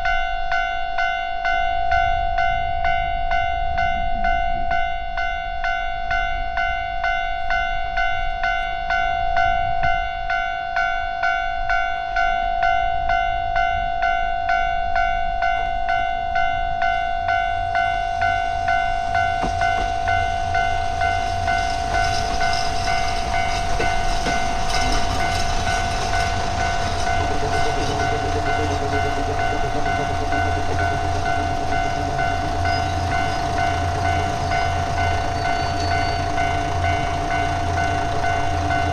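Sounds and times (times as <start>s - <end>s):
level crossing warning bell: 0.0s - 38.9s
diesel railcar engine rumble: 13.0s - 38.9s
wheel-on-rail noise: 17.2s - 38.9s.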